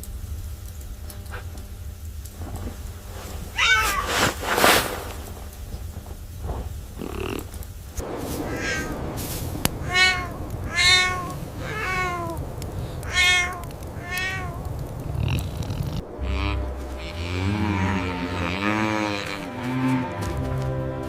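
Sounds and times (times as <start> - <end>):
low background rumble: 0.0 - 21.0
cat meowing: 3.5 - 4.4, 8.4 - 9.0, 9.8 - 12.4, 13.0 - 19.4.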